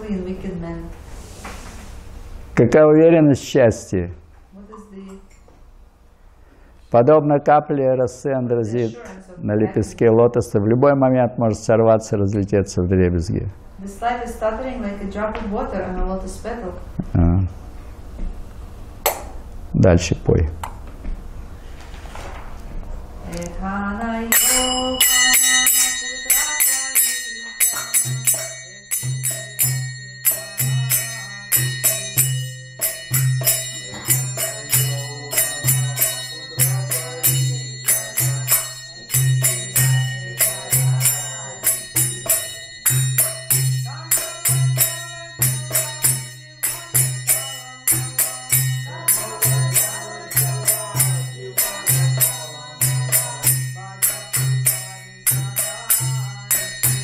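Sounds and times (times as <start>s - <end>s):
hand cymbals ringing: 24.3s - 57.0s.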